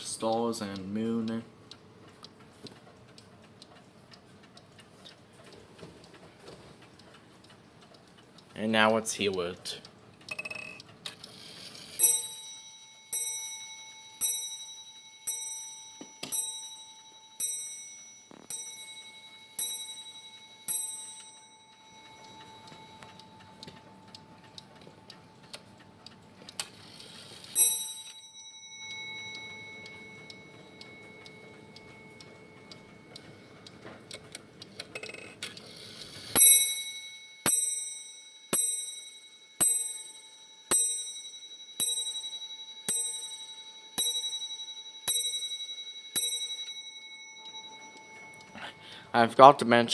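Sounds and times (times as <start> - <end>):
clock ticking quietly: 0.0 - 49.9
clock bell striking: 12.0 - 34.1, 36.3 - 49.9.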